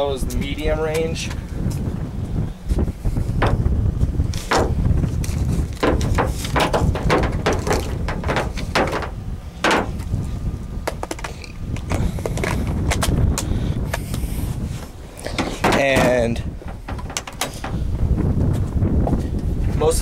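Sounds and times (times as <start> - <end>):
wind buffeting microphone: 0.0 - 20.0
sharp knocks and clicks: 3.4 - 3.6, 4.4 - 10.1, 15.3 - 17.9.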